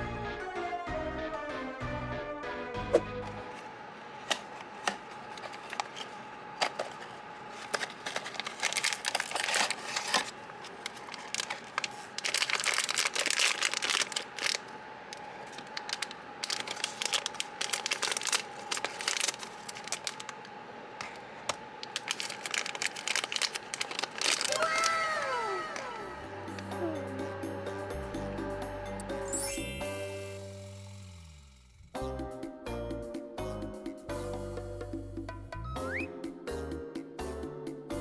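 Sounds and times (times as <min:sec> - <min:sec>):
plastic packaging crinkling: 0:04.3 - 0:25.2.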